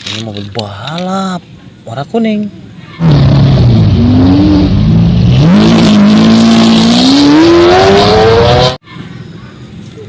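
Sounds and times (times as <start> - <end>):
race car engine revving: 3.0 - 8.8.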